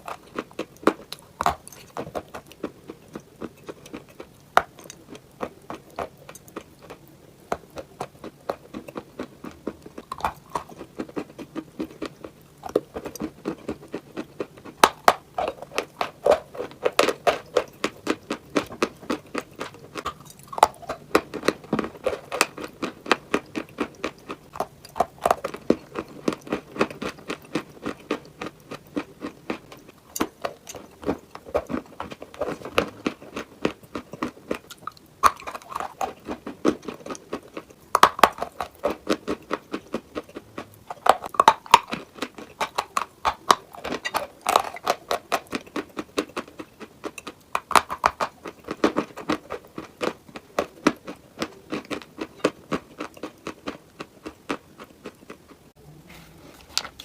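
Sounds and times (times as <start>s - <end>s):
person chewing hard clay: 0.0s - 57.0s.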